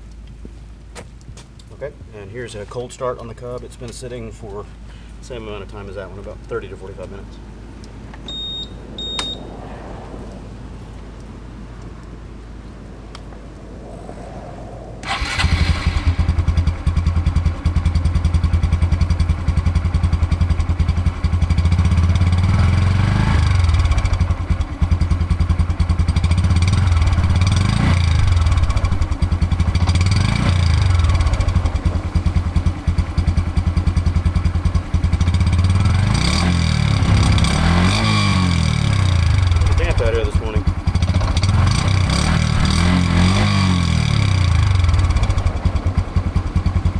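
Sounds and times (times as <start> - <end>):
electric starter cranking: 15.0 - 17.0
motorcycle engine idling and revving: 15.0 - 46.9.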